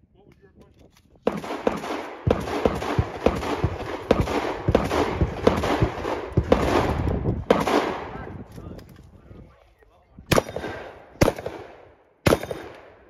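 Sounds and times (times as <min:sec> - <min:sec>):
shotgun shots: 0:01.2 - 0:08.3, 0:10.3 - 0:13.0.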